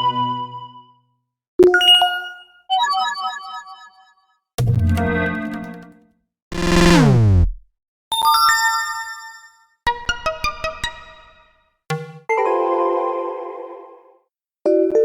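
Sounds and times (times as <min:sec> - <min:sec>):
tone sliding down in pitch: 0:06.6 - 0:07.6.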